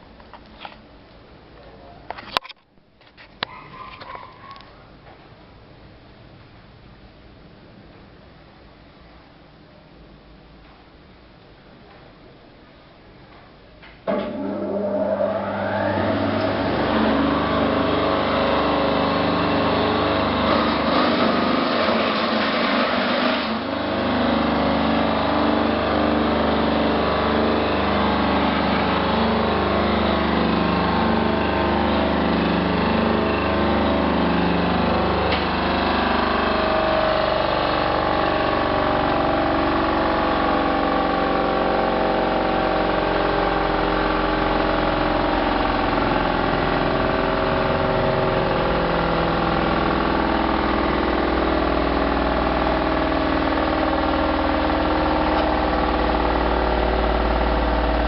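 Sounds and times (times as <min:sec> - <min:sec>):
machine motor drone: 0:14.0 - 0:58.0.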